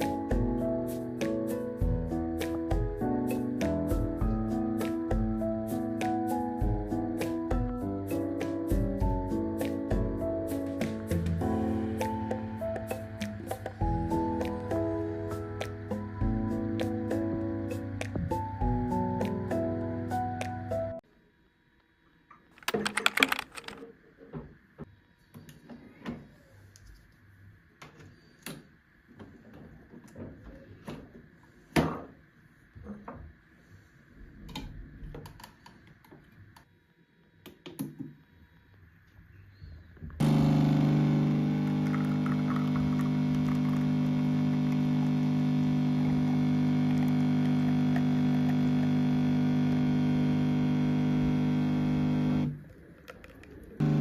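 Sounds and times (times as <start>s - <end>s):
clicks and knocks of handling: 22.6s - 23.9s
electric appliance humming: 40.2s - 52.7s, 53.8s - 54.0s.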